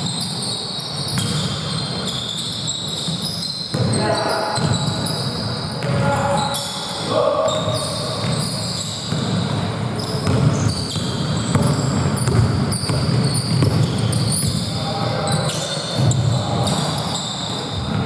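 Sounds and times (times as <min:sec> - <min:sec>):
sneakers squeaking on floor: 0:00.0 - 0:18.0
basketball bouncing: 0:08.2 - 0:14.6.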